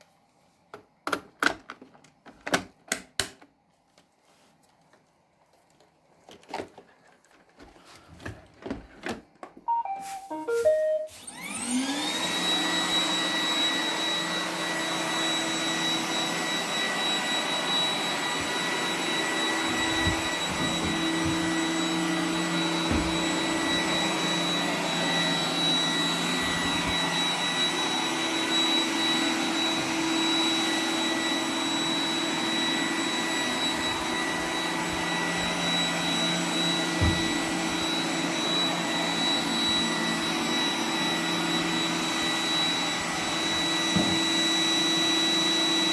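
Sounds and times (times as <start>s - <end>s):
robot vacuum whirring: 11.2s - 45.9s.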